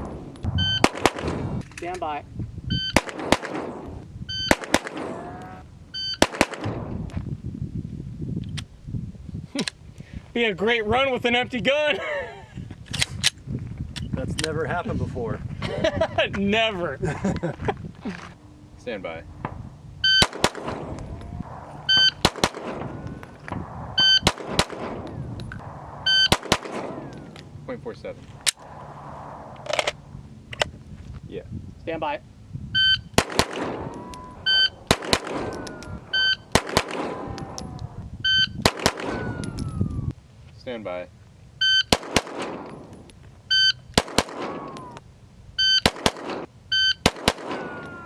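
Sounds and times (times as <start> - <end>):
shot timer beeps: 0.6 - 0.8, 6.0 - 6.2, 21.9 - 22.2, 26.1 - 26.4, 32.8 - 33.1, 34.1 - 34.8, 36.1 - 36.5, 41.6 - 41.9, 43.5 - 43.8, 46.7 - 47.0
pistol shots: 0.8 - 1.5, 3.0 - 3.9, 4.5 - 5.2, 6.2 - 6.9, 20.2 - 21.0, 22.0 - 25.1, 26.1 - 27.3, 33.2 - 34.1, 34.8 - 35.8, 36.4 - 37.6, 38.6 - 39.4, 41.9 - 42.9, 44.0 - 45.0, 45.8 - 47.8.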